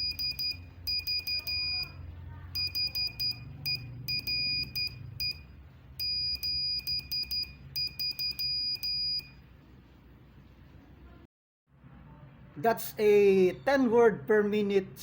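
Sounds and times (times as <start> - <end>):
morse code beeps: 0.0 - 9.4.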